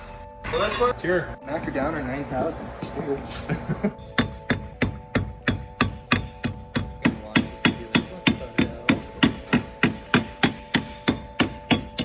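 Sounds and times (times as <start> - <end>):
hammer striking metal: 4.0 - 12.0.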